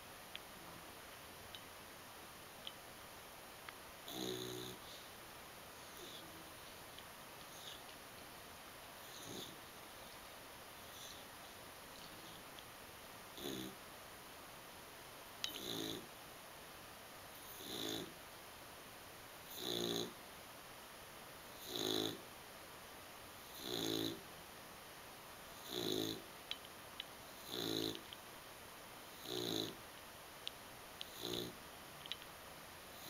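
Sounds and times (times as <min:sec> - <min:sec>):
pet snoring: 0:04.0 - 0:05.1, 0:05.8 - 0:06.6, 0:07.5 - 0:07.8, 0:09.0 - 0:09.6, 0:10.8 - 0:11.3, 0:13.4 - 0:13.8, 0:15.5 - 0:16.1, 0:17.4 - 0:18.2, 0:19.5 - 0:20.2, 0:21.5 - 0:22.2, 0:23.4 - 0:24.2, 0:25.5 - 0:26.3, 0:27.3 - 0:28.1, 0:29.1 - 0:29.8, 0:31.0 - 0:31.6.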